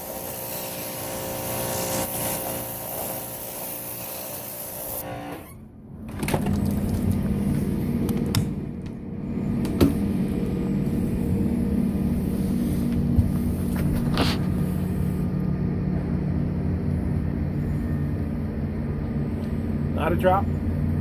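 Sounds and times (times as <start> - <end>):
pressure washer running: 0.0 - 5.2.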